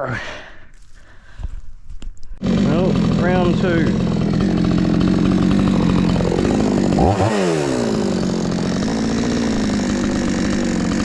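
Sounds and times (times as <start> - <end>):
chainsaw engine running: 2.4 - 11.0.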